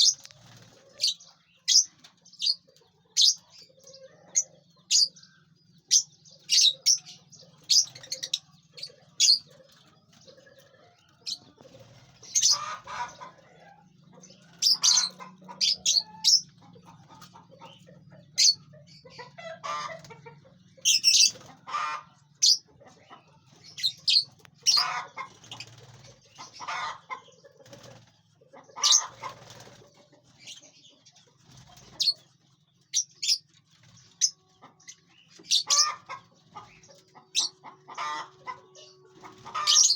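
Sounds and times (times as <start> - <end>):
wings flapping: 0.0 - 1.1, 25.2 - 26.2, 27.6 - 28.1, 29.0 - 29.9
lovebirds chirping: 0.0 - 39.9.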